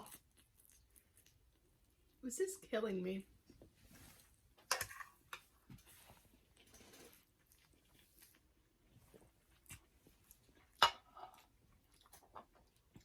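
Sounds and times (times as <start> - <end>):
faint chewing: 0.0 - 2.2, 5.2 - 13.0.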